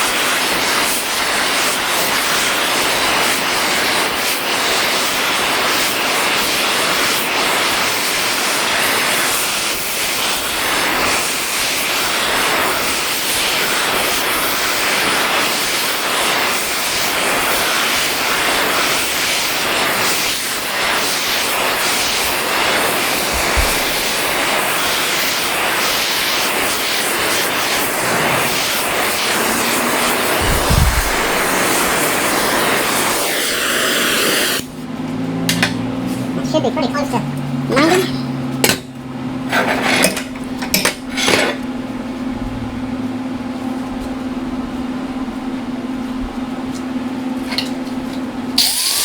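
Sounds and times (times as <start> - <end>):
gas flame hissing: 0.0 - 34.7, 47.4 - 49.0
dull low thumps: 30.4 - 31.7.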